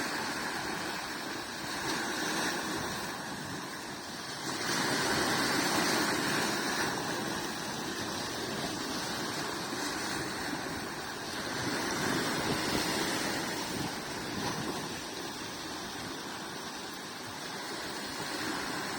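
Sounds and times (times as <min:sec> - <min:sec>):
sea waves on shore: 0:00.0 - 0:18.9.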